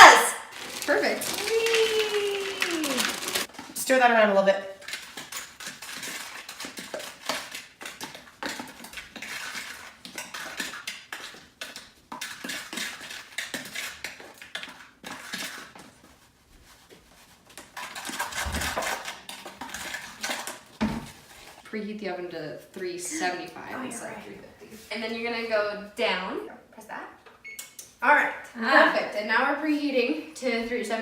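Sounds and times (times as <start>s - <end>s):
spoon stirring dough in bowl: 4.8s - 22.0s.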